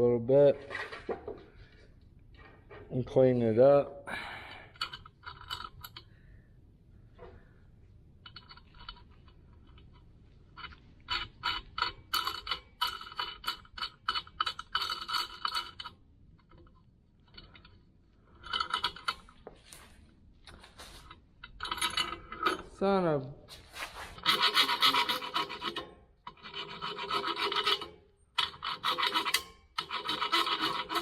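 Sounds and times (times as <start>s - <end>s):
hand file scraping on steel: 23.8s - 31.0s.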